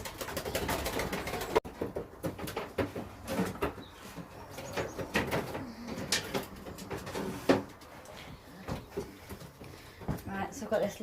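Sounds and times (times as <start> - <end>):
pigeons cooing: 3.8 - 7.5.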